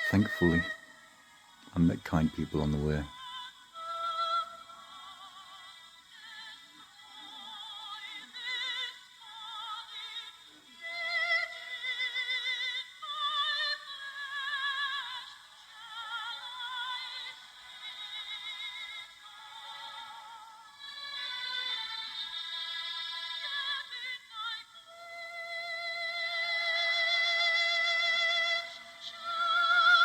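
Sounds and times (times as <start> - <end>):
operatic singing voice: 0.0 - 0.9, 1.7 - 3.2.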